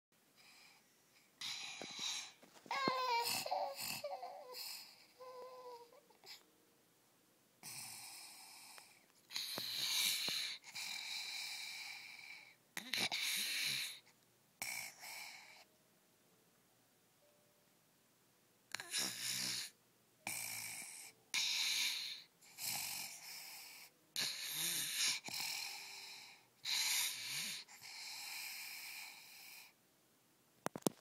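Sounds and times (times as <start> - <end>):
child snoring wheezily: 1.4 - 6.4, 7.6 - 15.7, 18.7 - 29.8
child whimpering cry: 1.8 - 6.4.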